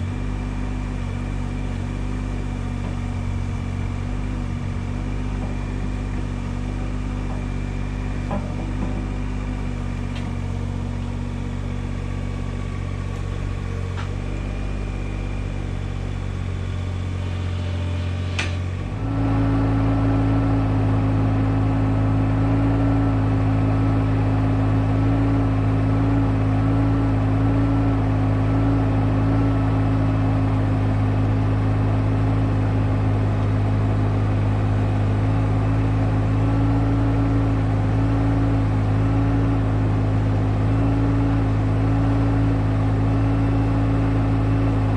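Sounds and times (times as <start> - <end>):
excavator diesel engine running: 0.0 - 44.9
click: 18.4 - 18.6.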